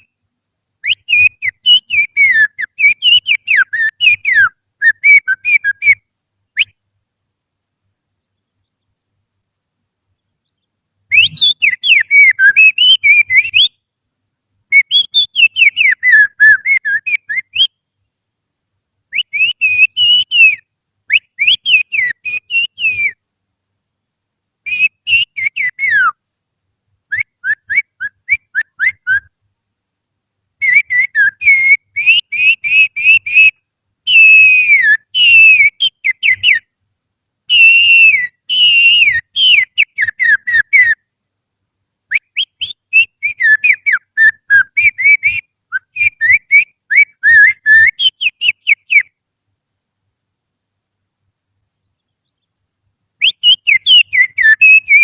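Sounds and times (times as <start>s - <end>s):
person whistling through fingers: 11.1s - 13.7s, 27.2s - 29.3s, 34.1s - 36.6s, 37.5s - 41.0s.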